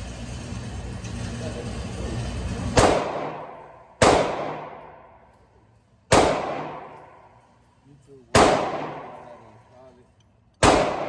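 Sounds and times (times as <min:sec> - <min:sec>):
pistol shots: 0:02.8 - 0:05.1, 0:06.1 - 0:07.2, 0:08.3 - 0:09.4, 0:10.6 - 0:11.0.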